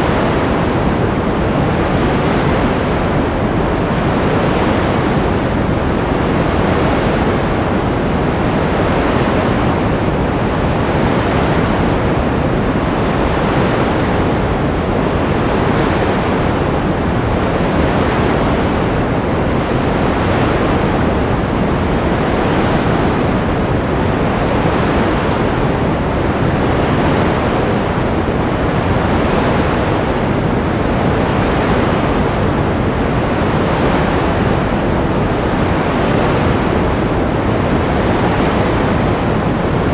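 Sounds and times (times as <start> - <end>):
ocean surf washing in: 0.0 - 39.9.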